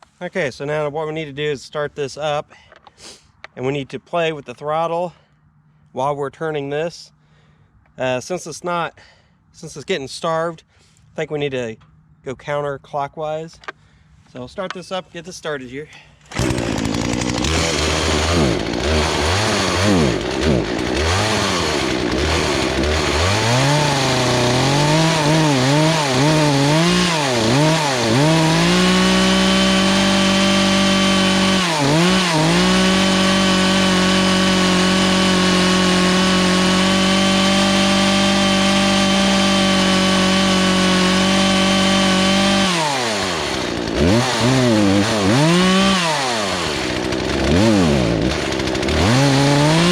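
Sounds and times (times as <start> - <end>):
chainsaw revving: 16.2 - 49.9.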